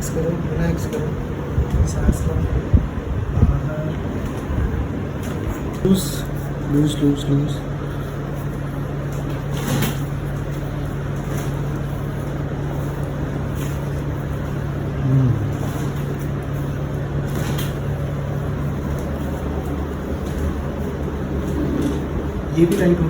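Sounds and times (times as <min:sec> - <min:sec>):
low machine hum: 0:00.0 - 0:23.0.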